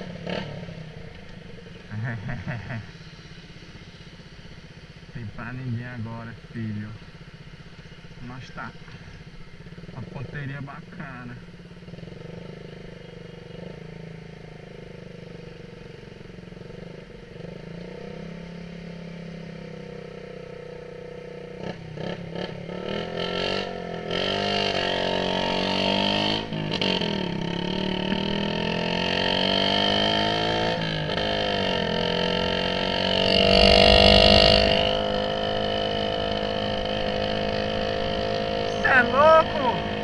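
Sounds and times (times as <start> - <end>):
motorcycle engine revving: 0.0 - 2.1, 11.4 - 40.0.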